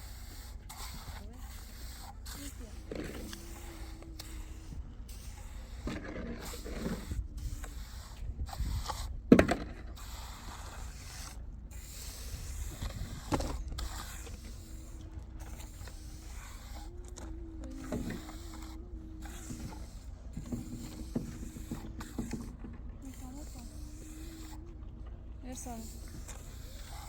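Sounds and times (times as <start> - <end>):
faint steady hum: 0.0 - 27.0.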